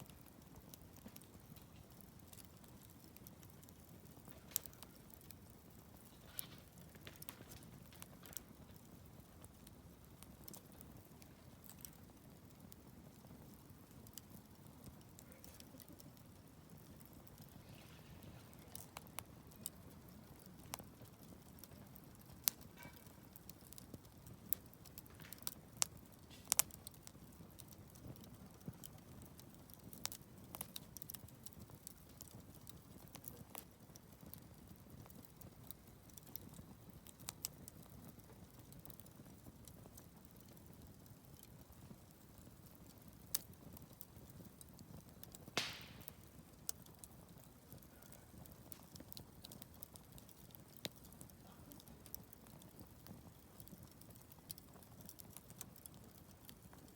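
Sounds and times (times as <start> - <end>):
rush of flames: 0.0 - 9.6, 14.8 - 21.3, 45.4 - 46.6
wood fire crackling and popping: 0.0 - 56.9.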